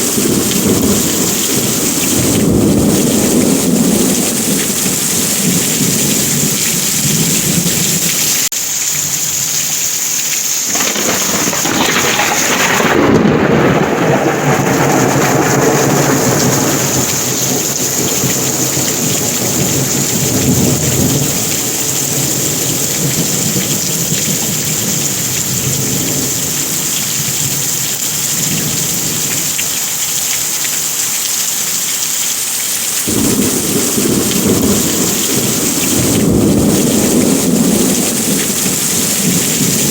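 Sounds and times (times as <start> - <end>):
thunder rolling: 0.0 - 8.2, 10.7 - 27.8, 33.1 - 39.9
heavy rain: 0.0 - 39.9.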